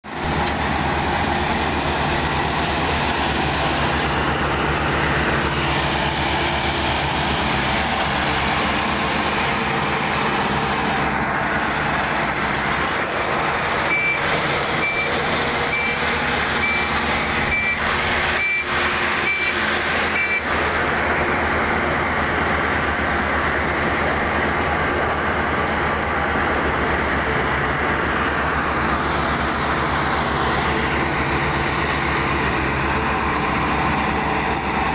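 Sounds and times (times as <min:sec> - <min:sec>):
combine harvester engine drone: 0:00.1 - 0:34.9
reversing alarm beeping: 0:13.8 - 0:20.5.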